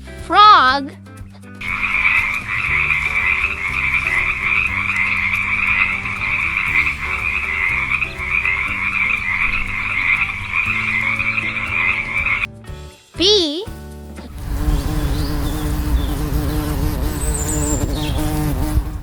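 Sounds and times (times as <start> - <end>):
light background music: 0.0 - 18.9
frogs croaking: 1.6 - 12.5.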